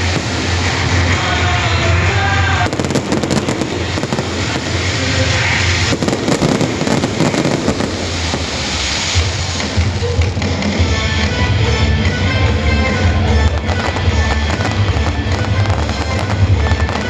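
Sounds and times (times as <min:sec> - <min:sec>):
fireworks bangs and crackles: 0:00.0 - 0:11.4, 0:12.0 - 0:17.0
music playing: 0:00.0 - 0:17.0.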